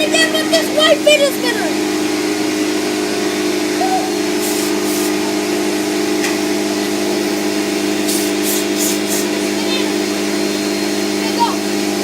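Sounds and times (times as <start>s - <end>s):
motor humming: 0.0s - 12.0s
rushing air hiss: 4.2s - 11.8s.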